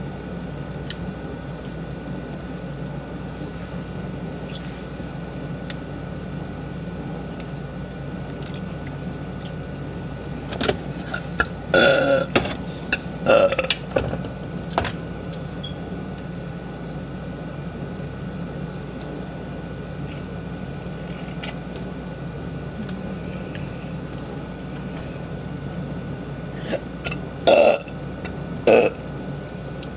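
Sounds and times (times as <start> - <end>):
low background hum: 0.0 - 29.9
woman burping: 11.7 - 12.4, 13.2 - 13.7, 27.4 - 27.9, 28.6 - 29.0.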